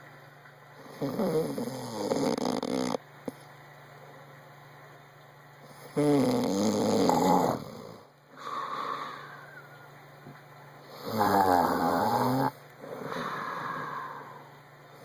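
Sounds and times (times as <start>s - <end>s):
man snoring: 0.9s - 3.0s, 5.9s - 8.1s, 10.9s - 14.2s
high breath sound: 12.9s - 14.5s.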